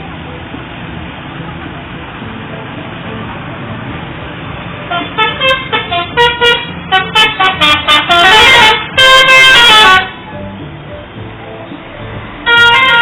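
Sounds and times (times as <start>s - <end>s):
musical bus air horn: 4.8s - 10.3s, 12.4s - 13.0s.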